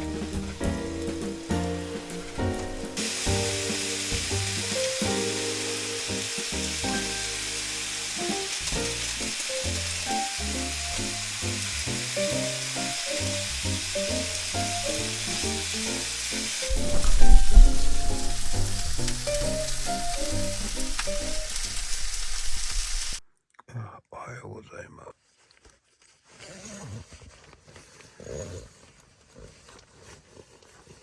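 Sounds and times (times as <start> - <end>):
simple melody with bass: 0.0 - 21.6
sizzling hiss: 0.0 - 23.2.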